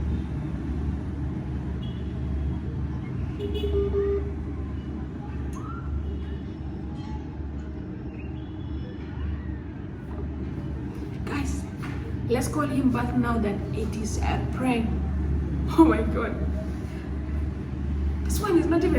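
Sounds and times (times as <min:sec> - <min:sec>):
low background rumble: 0:09.6 - 0:18.9.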